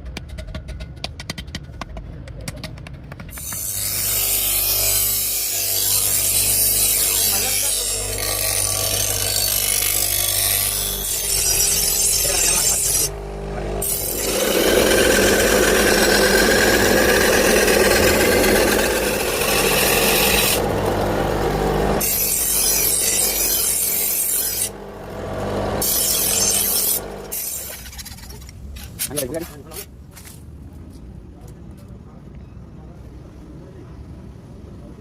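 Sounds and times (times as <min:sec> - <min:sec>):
power tool grinding metal: 0:03.3 - 0:29.2
motor hum: 0:08.0 - 0:27.4.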